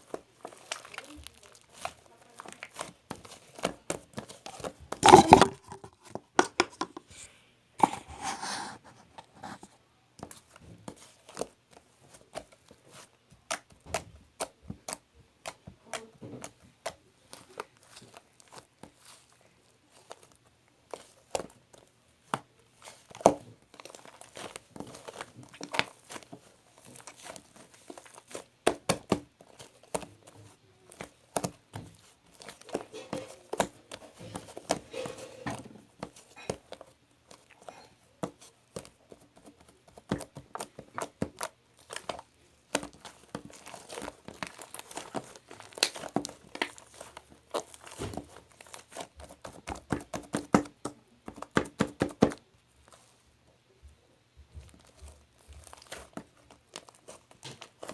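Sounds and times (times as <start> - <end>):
crinkling and crackling: 0.0 - 57.9
sharp clicks and taps: 5.0 - 7.1.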